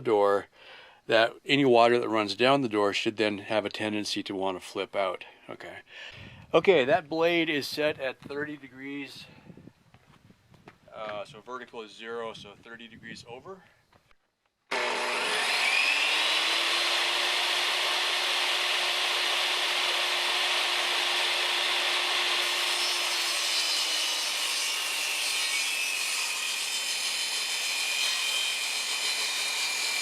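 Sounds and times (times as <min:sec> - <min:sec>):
electric saw cutting wood: 0:14.7 - 0:30.0.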